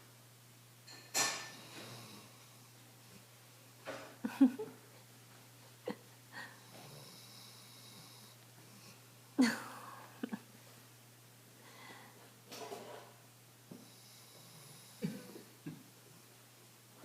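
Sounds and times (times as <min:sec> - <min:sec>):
dog snoring: 0:01.3 - 0:02.8, 0:06.6 - 0:09.0, 0:13.8 - 0:15.5.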